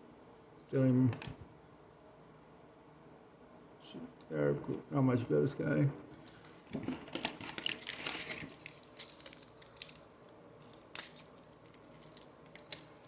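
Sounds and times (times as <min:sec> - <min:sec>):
plastic wrapper crinkling: 0:06.2 - 0:13.0.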